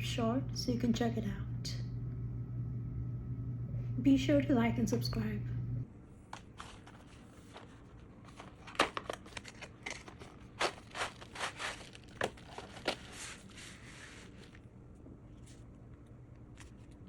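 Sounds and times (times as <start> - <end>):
crinkling: 6.3 - 17.0
objects clicking and scraping: 6.4 - 14.6.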